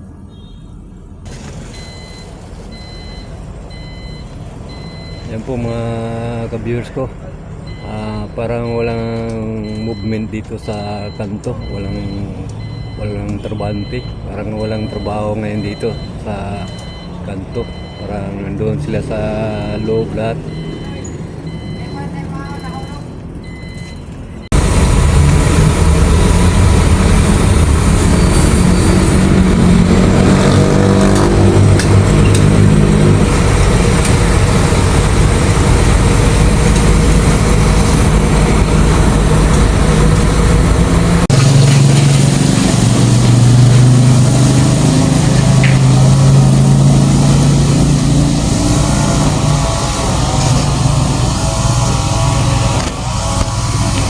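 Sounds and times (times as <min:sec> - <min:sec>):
vehicle engine running: 0:20.4 - 0:54.0
steady noisy rush: 0:24.5 - 0:30.6, 0:42.6 - 0:54.0.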